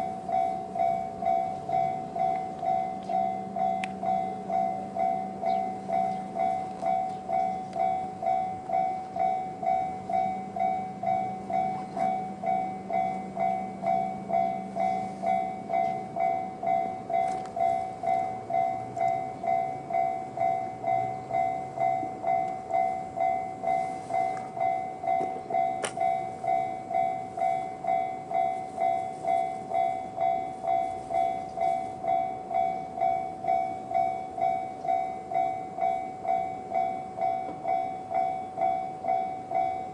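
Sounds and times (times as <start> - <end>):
level crossing warning bell: 0.0 - 39.9.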